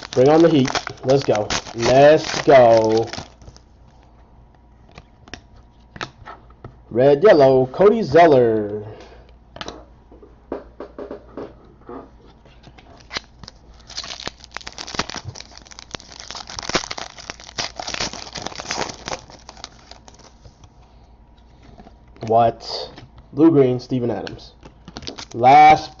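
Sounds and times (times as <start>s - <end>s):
foil wrapper crinkling: 0.0s - 3.6s, 13.0s - 20.6s, 24.7s - 26.0s.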